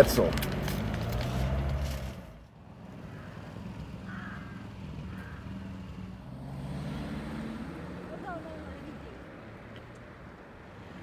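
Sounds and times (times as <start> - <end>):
vehicle engine humming: 0.0 - 6.5.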